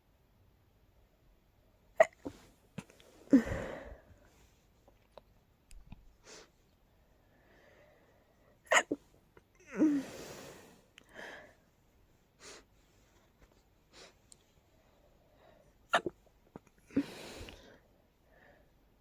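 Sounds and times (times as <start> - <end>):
person sneezing: 2.0 - 4.0, 8.7 - 9.1
short breaths: 9.7 - 11.6, 16.9 - 18.7.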